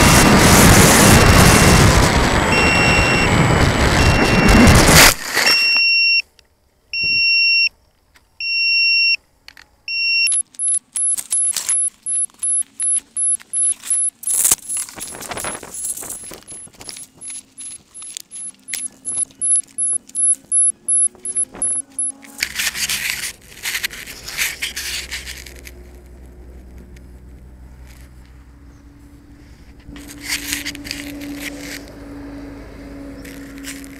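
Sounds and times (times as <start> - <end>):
electronic beeps: 2.5 - 4.8, 9.9 - 22.2
clicks and rattling: 10.3 - 25.8.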